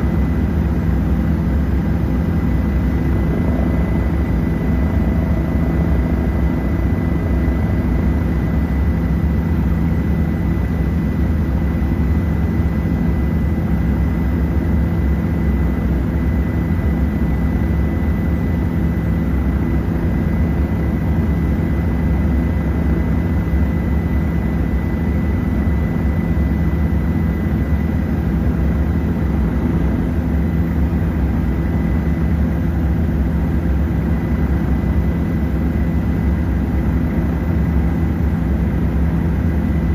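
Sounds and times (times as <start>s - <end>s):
high whine: 0.0s - 21.9s
helicopter engine and rotors: 0.0s - 39.9s.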